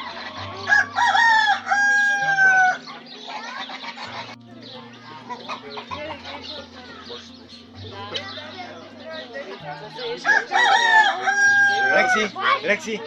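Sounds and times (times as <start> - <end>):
rooster crowing: 0.0 - 2.9, 10.2 - 12.4
small birds chirping: 0.0 - 13.0.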